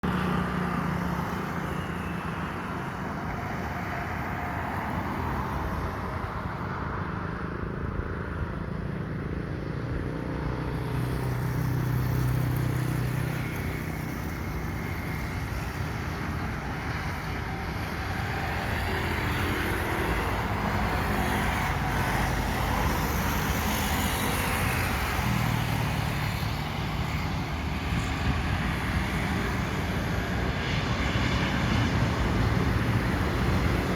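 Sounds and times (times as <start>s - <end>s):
jet engines rumbling: 10.8s - 33.9s.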